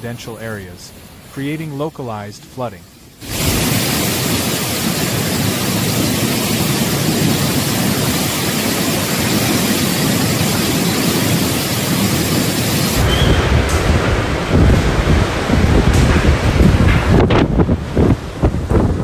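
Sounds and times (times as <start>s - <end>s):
heavy rain: 2.8s - 19.0s
strong wind: 3.2s - 19.0s.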